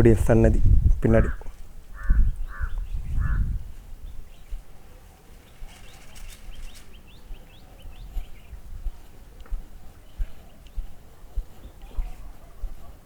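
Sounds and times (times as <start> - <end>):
crow cawing: 1.2 - 3.5
small bird chirping: 1.9 - 12.4.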